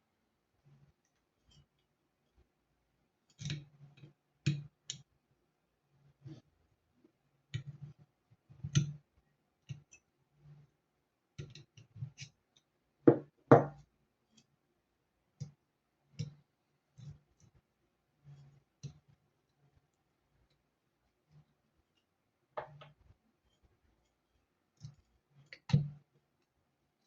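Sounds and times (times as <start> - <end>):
hard objects clicking and knocking: 13.1 - 13.8, 22.6 - 23.1.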